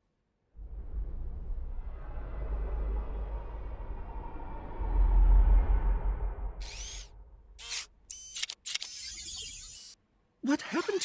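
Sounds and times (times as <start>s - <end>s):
electronic zaps and clicks: 6.6s - 10.0s.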